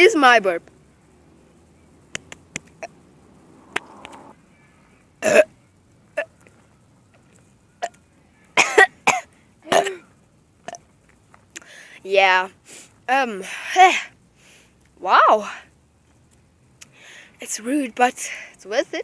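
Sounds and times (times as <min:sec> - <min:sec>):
person burping: 0:05.2 - 0:05.5.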